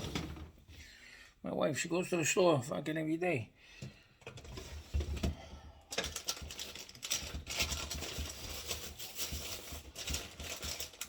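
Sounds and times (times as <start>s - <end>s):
items clicking and knocking: 0.0s - 0.7s, 3.8s - 11.0s
plastic bags crinkling: 5.9s - 11.0s.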